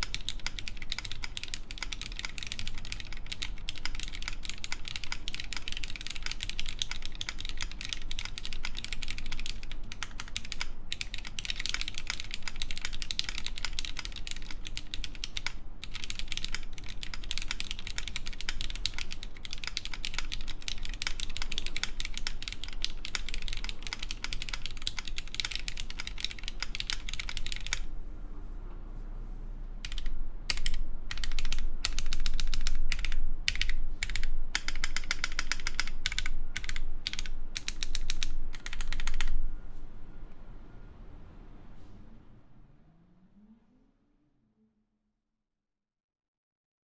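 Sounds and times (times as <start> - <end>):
fast typing on mechanical keyboard: 0.0 - 27.9, 29.8 - 39.4
slow loud keystrokes: 0.0 - 27.9, 29.8 - 39.4.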